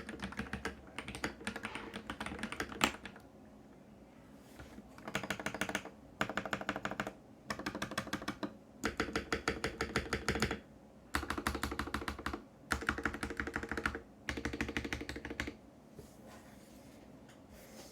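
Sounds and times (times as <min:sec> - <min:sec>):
typing on computer keyboard: 0:00.0 - 0:03.2, 0:05.0 - 0:15.6.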